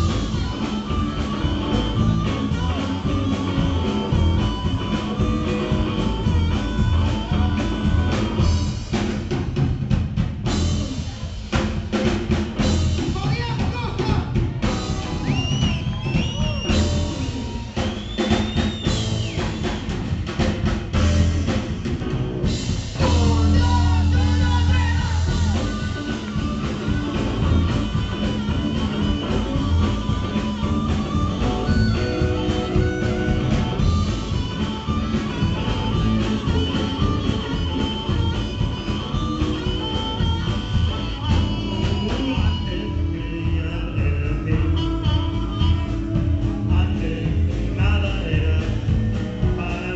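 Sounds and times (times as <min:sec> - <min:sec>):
person singing: 0:00.0 - 0:08.8, 0:23.0 - 0:49.9
blues-rock band playing: 0:00.0 - 0:49.9
drum kit: 0:00.0 - 0:49.9
guitar: 0:00.0 - 0:49.9.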